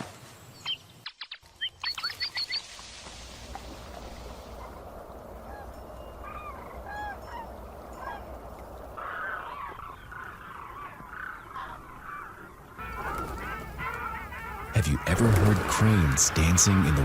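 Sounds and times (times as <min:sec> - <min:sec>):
chorus of overlapping animal calls: 0:04.5 - 0:17.0
animal calls: 0:09.0 - 0:17.0.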